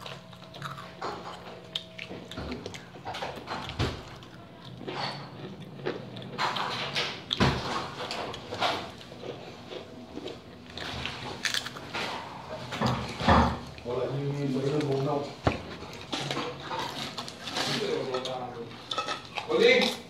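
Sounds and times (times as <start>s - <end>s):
crisps crunching: 8.0s - 20.0s.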